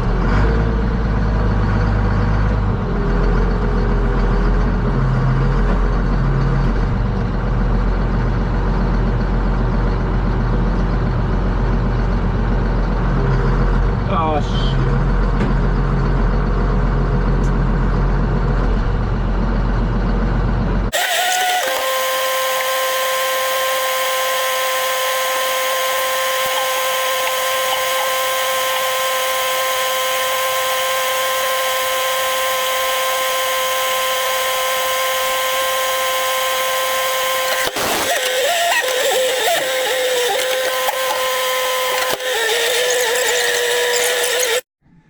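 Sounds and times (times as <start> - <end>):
small motor whining: 20.9 - 44.7.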